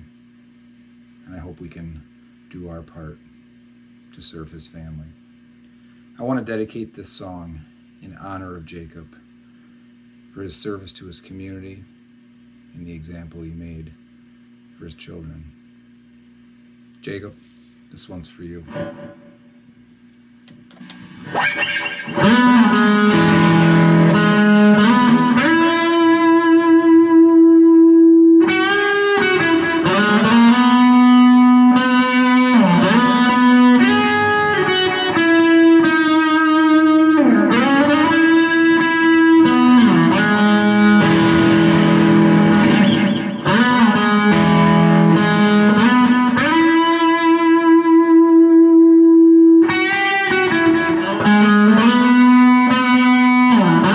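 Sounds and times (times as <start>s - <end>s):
distorted electric guitar melody: 18.7s - 19.4s, 20.8s - 53.9s.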